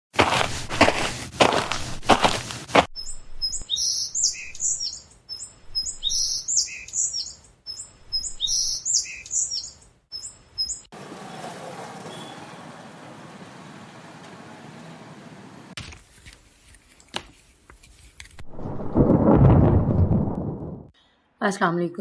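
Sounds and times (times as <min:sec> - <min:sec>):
bird chirps and whistles: 0:03.0 - 0:10.9.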